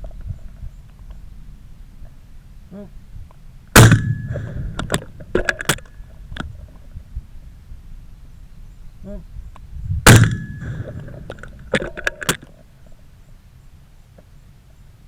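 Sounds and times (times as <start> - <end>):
shotgun shot: 3.8 - 4.9, 10.0 - 11.2.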